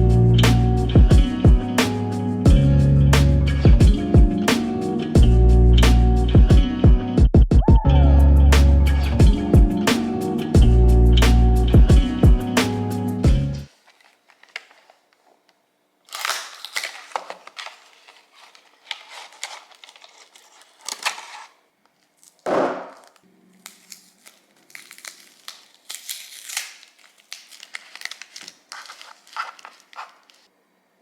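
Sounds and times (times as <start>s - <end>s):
background music: 0.0s - 13.7s
rustling and crinkling: 13.6s - 30.5s.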